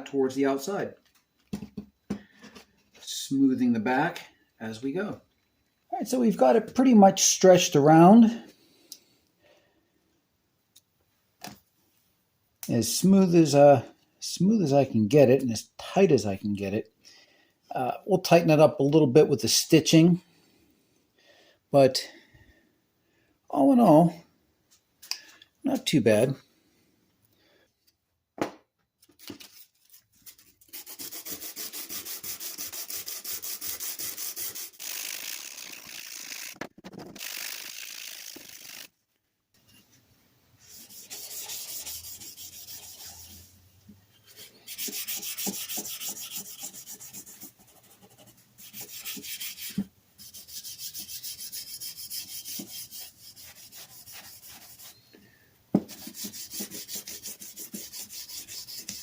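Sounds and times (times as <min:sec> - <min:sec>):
hand rubbing and scraping: 0:29.2 - 0:38.9, 0:40.6 - 0:55.2, 0:55.8 - 0:59.0.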